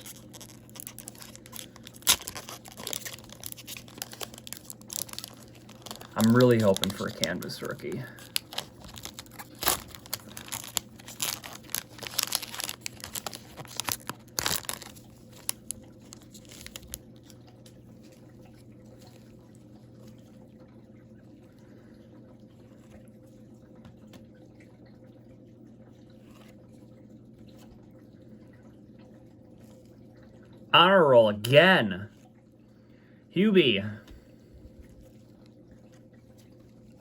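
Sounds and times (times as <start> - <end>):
wrapper tearing and crinkling: 0.0 - 17.4
faint steady hum: 0.0 - 37.0.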